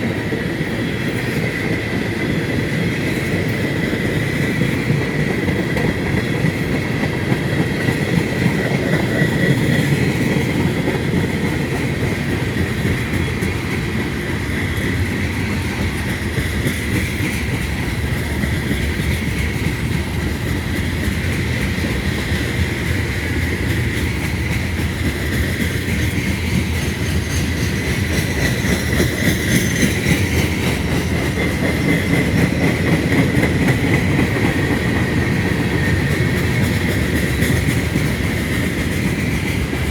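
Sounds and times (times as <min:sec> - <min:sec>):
freight train rumbling past: 0:00.0 - 0:39.9.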